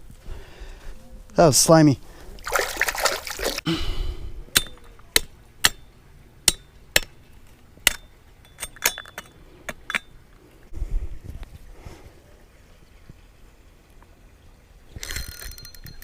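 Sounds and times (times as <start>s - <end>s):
hard objects clinking together: 7.8s - 10.2s.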